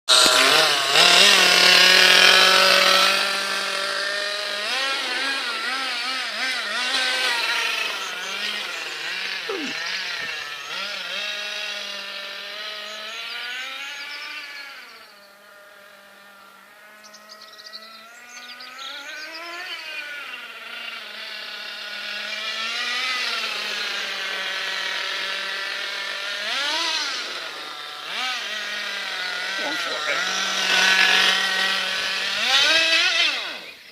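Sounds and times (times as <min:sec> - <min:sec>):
rc car engine revving: 0:00.1 - 0:33.9.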